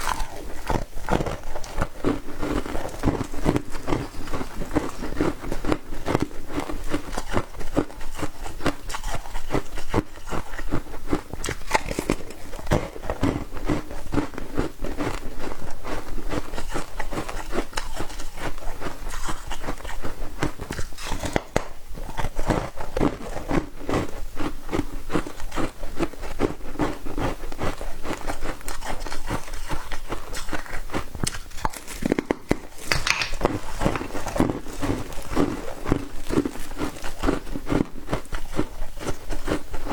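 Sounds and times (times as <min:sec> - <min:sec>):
ice being chewed: 0:00.0 - 0:39.9.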